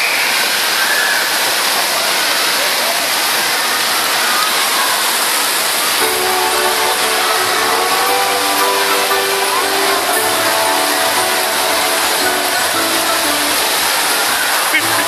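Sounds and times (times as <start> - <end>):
music: 6.0 - 15.0.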